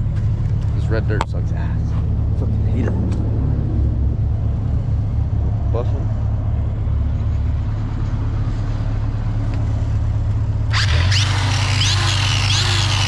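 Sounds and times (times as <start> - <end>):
engine droning: 0.0 - 13.0
angle grinder whining: 10.7 - 13.0.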